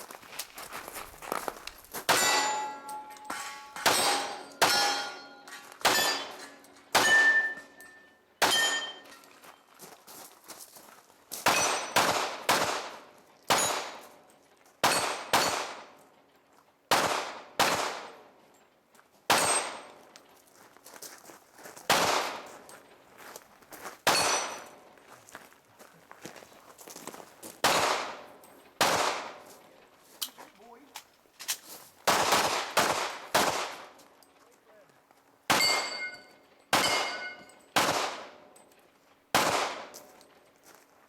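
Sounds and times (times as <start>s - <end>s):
metallic clang of steel targets: 2.0s - 9.5s, 11.4s - 16.1s, 19.3s - 20.2s, 24.0s - 24.9s, 35.5s - 40.4s
carbine gunshots: 3.8s - 7.6s, 11.4s - 14.0s, 14.8s - 16.0s, 16.9s - 18.2s, 21.9s - 22.5s, 27.6s - 29.4s, 32.0s - 33.9s, 35.5s - 38.4s, 39.3s - 40.0s.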